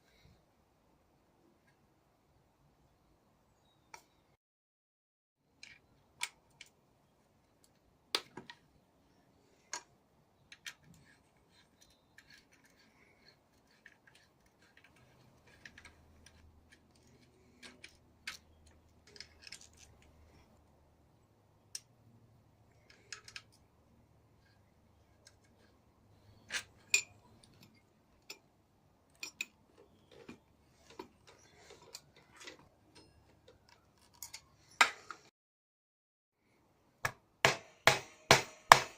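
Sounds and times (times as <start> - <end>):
metallic clicks and clinks of tools: 29.1 - 29.9.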